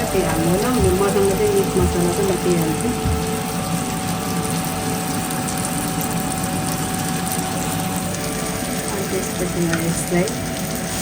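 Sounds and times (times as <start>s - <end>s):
onions sizzling in oil: 0.0s - 11.0s
steady hum: 0.0s - 11.0s.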